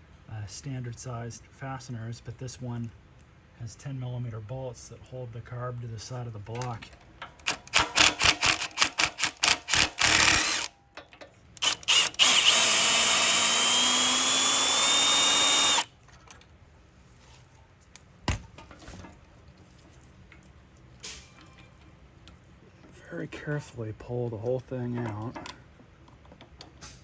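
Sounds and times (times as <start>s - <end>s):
power driver whirring: 7.6s - 10.7s, 11.6s - 15.9s.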